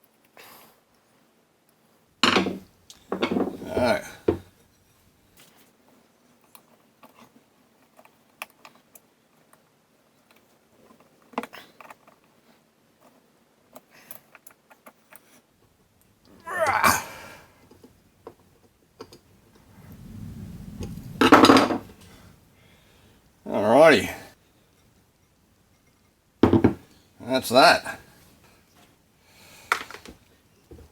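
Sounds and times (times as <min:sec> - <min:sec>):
small metallic clicks and clinks: 0:13.0 - 0:15.4
knock: 0:26.4 - 0:26.8.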